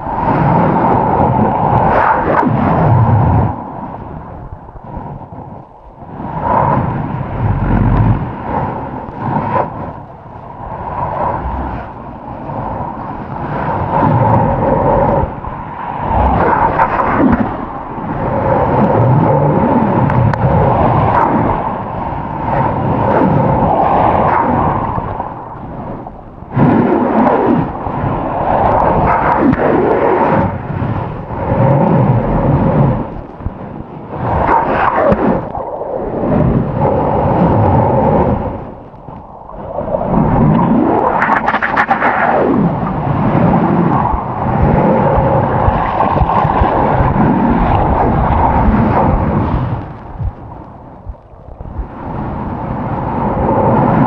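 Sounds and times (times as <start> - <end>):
ocean surf rushing: 0.0 - 54.0
water buffeting microphone: 0.0 - 54.0.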